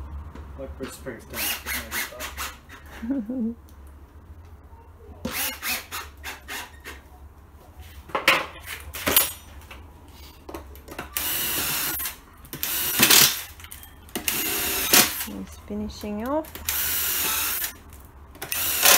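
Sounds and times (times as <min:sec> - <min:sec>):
cordless drill driving screw: 0:01.4 - 0:02.6, 0:05.3 - 0:06.7, 0:11.2 - 0:13.5, 0:14.2 - 0:15.3, 0:16.6 - 0:17.8, 0:18.4 - 0:18.9.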